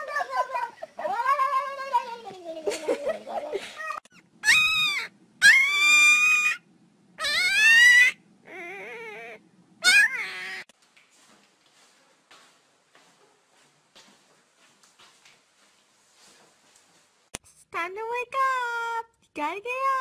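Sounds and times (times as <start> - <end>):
pet yowling: 4.0 - 6.6, 7.2 - 10.7.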